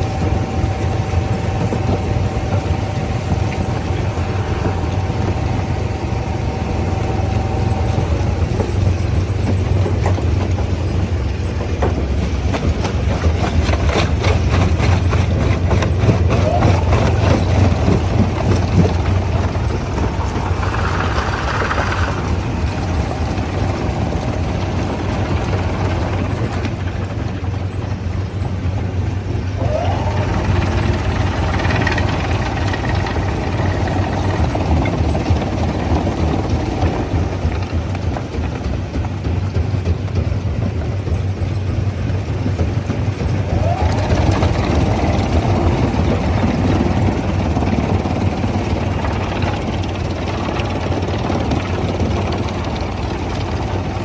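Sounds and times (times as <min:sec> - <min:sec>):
rising whine: 0:00.0 - 0:11.3, 0:15.3 - 0:27.3
diesel machinery humming: 0:00.0 - 0:54.0.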